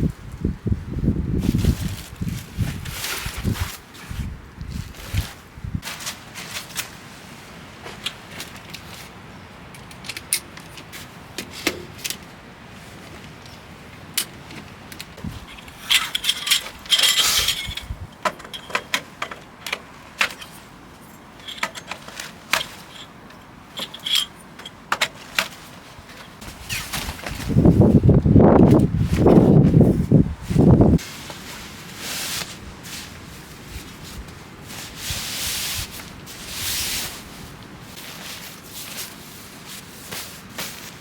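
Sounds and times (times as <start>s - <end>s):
rustling: 0.0s - 9.2s, 25.0s - 41.0s.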